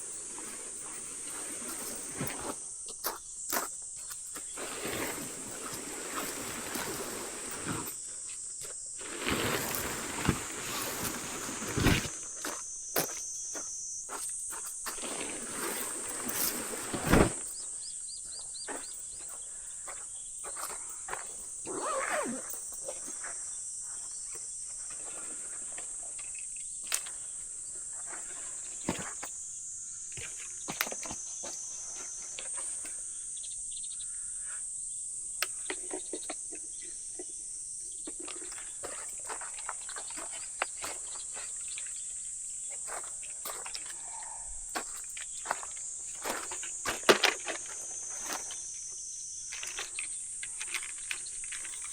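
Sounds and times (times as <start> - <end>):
high-pitched insect chorus: 0.0 - 51.9.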